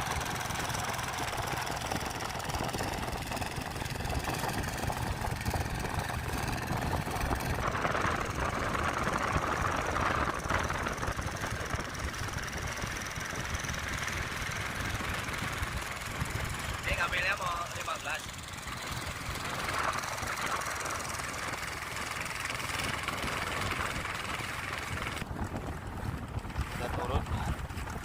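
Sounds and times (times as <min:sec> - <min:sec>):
wind noise on microphone: 0:00.0 - 0:17.3, 0:18.4 - 0:28.0
boat engine running: 0:00.0 - 0:28.0
rush of water: 0:14.4 - 0:28.0.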